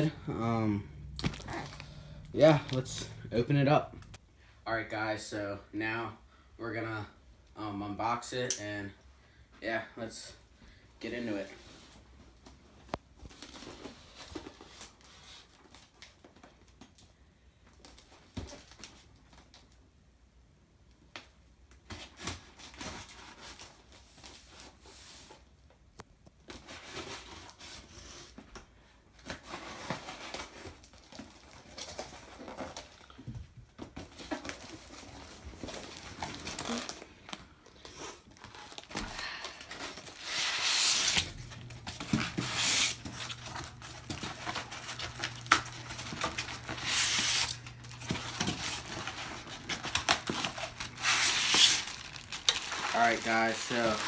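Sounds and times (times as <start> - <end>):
low steady hum: 0.0 - 7.8, 38.5 - 54.0
cardboard and plastic wrap tearing: 1.0 - 3.4, 34.0 - 37.2, 38.3 - 54.0.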